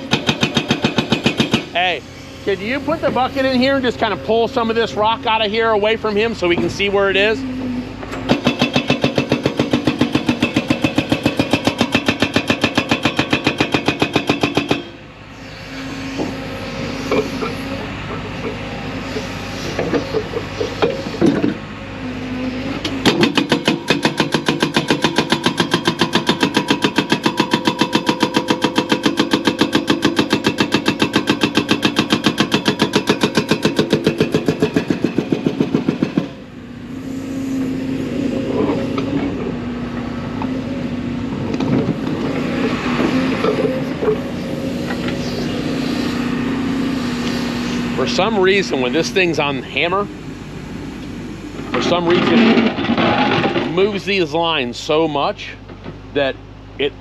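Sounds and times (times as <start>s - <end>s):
hydraulic breaker hammering rock: 0.0s - 15.0s, 15.8s - 21.6s, 22.8s - 40.6s, 41.4s - 50.2s, 51.6s - 54.2s
diesel engine running: 0.0s - 57.0s
metal clanks: 51.7s - 53.8s.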